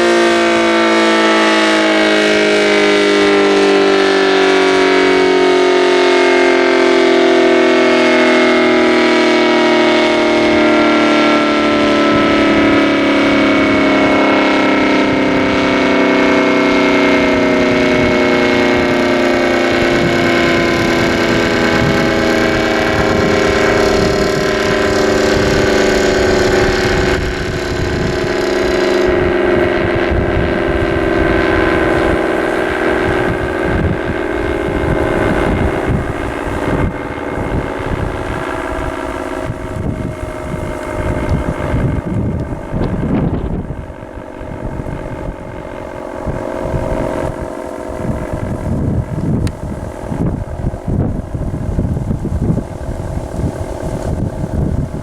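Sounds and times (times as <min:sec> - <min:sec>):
warning siren winding down: 0:00.0 - 0:55.0
low rumble: 0:17.2 - 0:55.0.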